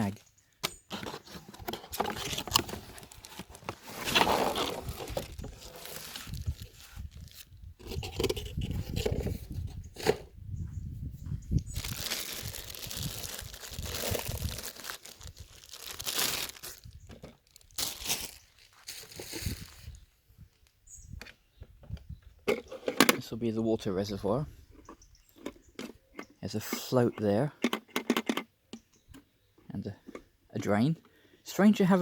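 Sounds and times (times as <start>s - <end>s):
plastic wrapping and cardboard rustling: 0.9s - 9.4s, 11.7s - 20.0s.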